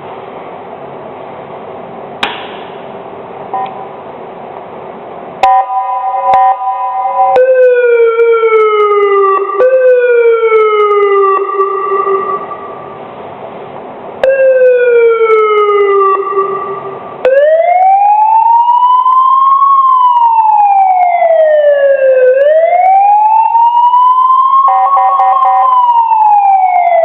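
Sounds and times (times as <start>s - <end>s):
low hum: 2.6s - 18.2s
police siren wailing: 5.4s - 13.0s, 14.2s - 27.0s
steady electronic siren tone: 5.4s - 13.1s, 14.2s - 27.0s.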